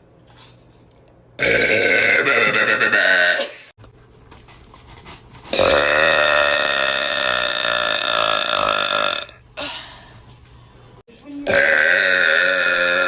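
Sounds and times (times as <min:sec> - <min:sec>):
person burping: 0:01.4 - 0:03.7, 0:05.6 - 0:09.4, 0:11.5 - 0:13.0.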